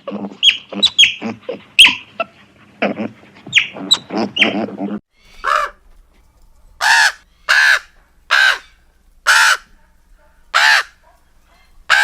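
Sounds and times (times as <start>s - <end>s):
bird calling: 0.3s - 1.2s, 3.5s - 5.8s, 6.8s - 12.0s.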